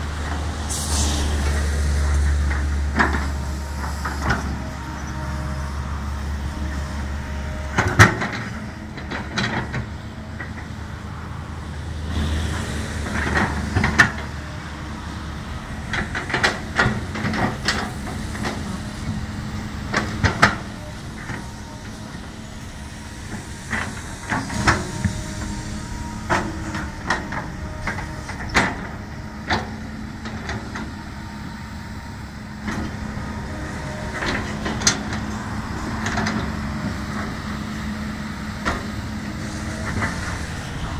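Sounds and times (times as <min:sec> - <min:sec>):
excavator diesel engine running: 0:00.0 - 0:40.9
metallic clanks and knocks: 0:26.3 - 0:31.0.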